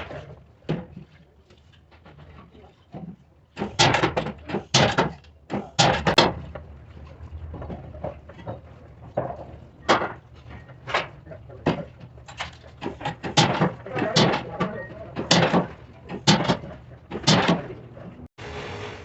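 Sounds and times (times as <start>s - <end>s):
tools knocking and clanking: 2.9s - 6.7s, 7.5s - 18.2s.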